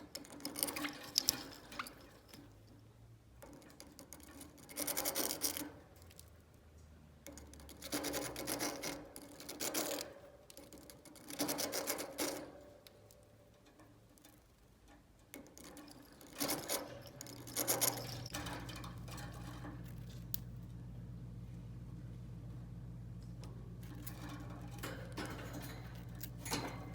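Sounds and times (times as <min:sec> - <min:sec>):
low steady hum: 0:12.6 - 0:26.9.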